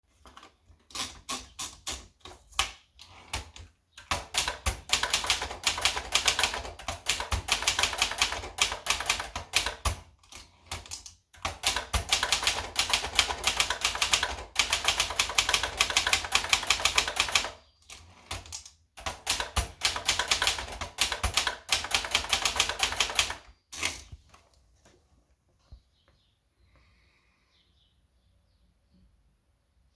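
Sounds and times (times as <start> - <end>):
typewriter keys clacking: 3.0 - 24.1.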